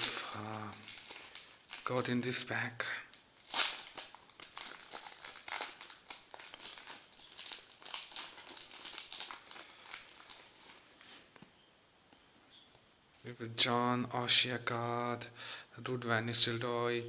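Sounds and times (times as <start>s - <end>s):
foil pack tearing and crinkling: 0.0s - 2.4s, 3.4s - 10.9s.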